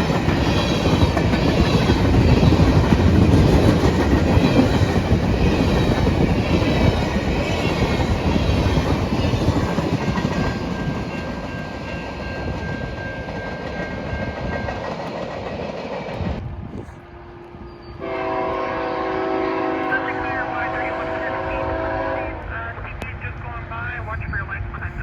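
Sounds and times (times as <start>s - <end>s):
freight train wheels clicking on rails: 0.0s - 16.5s.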